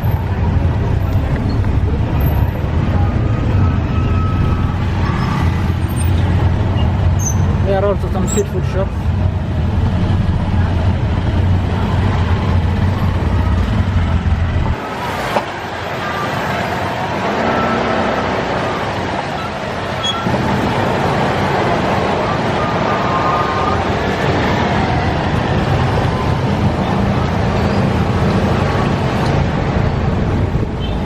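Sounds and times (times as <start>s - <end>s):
loud low engine hum: 0.0s - 31.0s
vehicle engines in heavy traffic: 0.0s - 31.0s.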